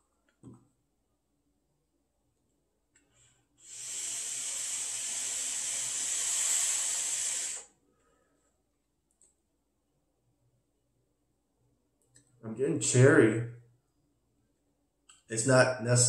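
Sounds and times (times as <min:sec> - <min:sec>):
vape hiss: 0:03.6 - 0:07.7.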